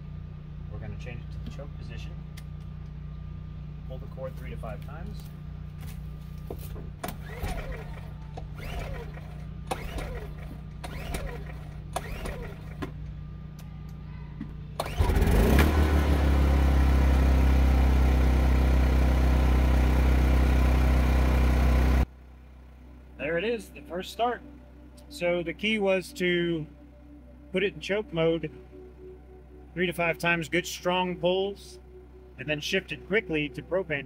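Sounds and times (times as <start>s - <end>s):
generator engine running: 0.0s - 34.0s
recoil starter cord pulls: 7.0s - 13.0s, 14.8s - 16.0s.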